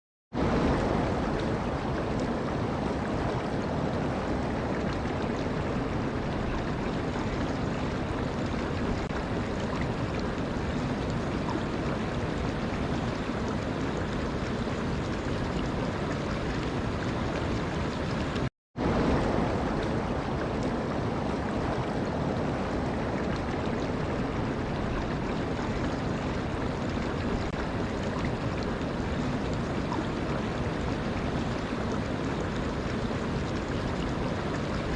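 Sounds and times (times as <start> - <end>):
running water rushing: 0.4 - 34.9.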